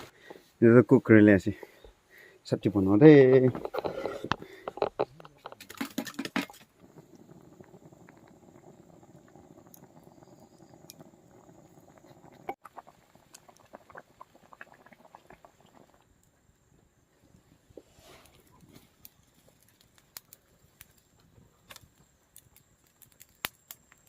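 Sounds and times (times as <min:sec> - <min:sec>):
curry bubbling in a pot: 0:03.6 - 0:17.3.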